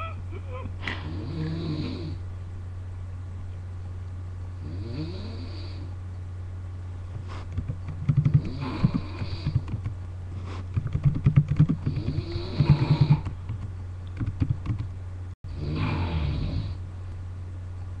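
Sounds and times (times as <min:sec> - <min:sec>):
person snoring: 0:00.0 - 0:02.2, 0:11.9 - 0:13.2, 0:15.5 - 0:16.8
steady low hum: 0:00.0 - 0:18.0.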